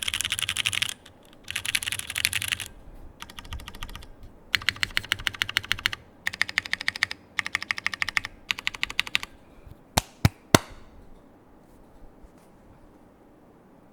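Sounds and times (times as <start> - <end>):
mechanical keyboard typing: 0.0 - 9.3.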